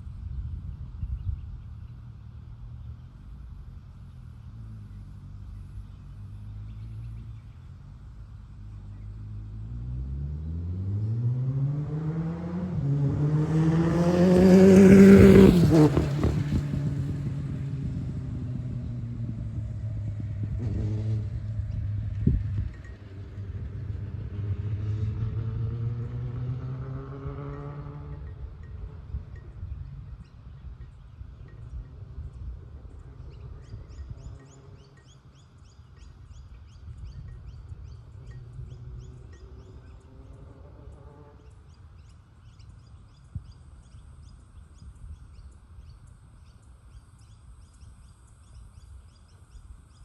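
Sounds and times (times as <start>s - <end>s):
motorcycle engine revving: 8.9s - 45.9s.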